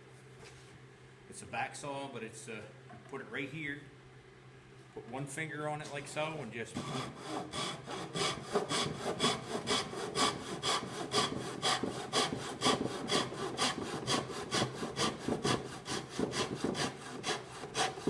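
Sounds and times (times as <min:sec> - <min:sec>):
handsaw cutting wood: 0:06.8 - 0:18.0.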